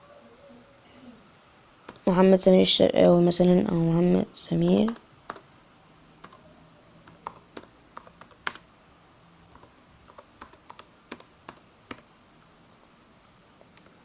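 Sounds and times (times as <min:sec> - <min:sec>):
keyboard typing: 0:04.6 - 0:05.5, 0:06.2 - 0:06.4, 0:07.0 - 0:08.7, 0:09.5 - 0:12.1.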